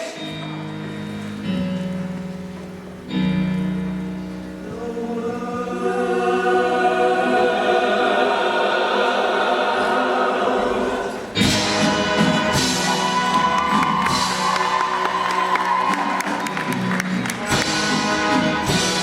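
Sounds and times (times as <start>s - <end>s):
choir singing a held chord: 4.6s - 14.5s.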